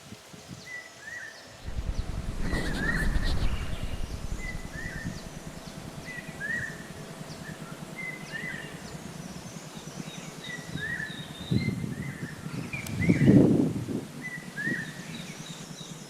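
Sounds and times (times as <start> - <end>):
low muffled bump: 1.6 - 8.2
birds chirping: 1.6 - 11.6.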